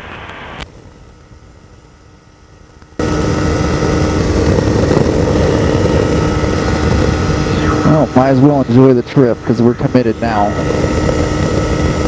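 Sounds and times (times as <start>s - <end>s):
ultralight engine and propeller drone: 0.0s - 12.0s
wind noise: 3.0s - 12.0s.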